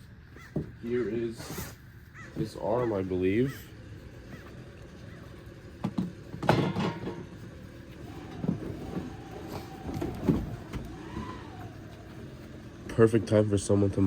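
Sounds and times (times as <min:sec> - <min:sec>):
lawn mower engine hum: 0:00.0 - 0:14.0
plastic and cardboard clattering: 0:05.8 - 0:07.4, 0:08.0 - 0:12.4.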